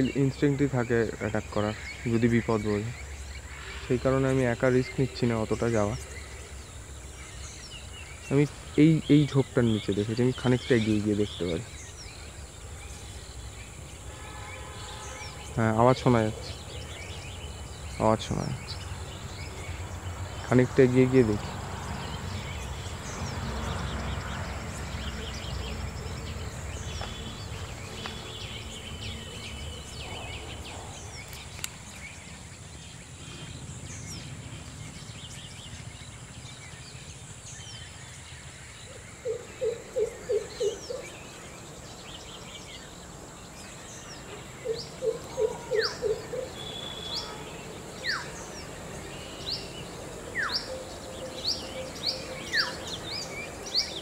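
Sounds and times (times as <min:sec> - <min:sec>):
high insect whine: 0:00.0 - 0:54.0
bird hooting low: 0:38.9 - 0:41.4, 0:44.2 - 0:47.4
sharp high bird chirps: 0:44.7 - 0:54.0.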